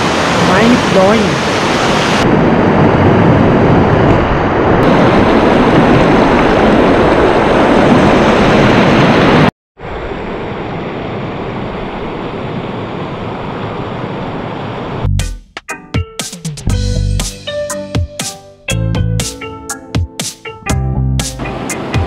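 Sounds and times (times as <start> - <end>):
waterfall roaring: 0.0 - 15.1, 21.4 - 22.0.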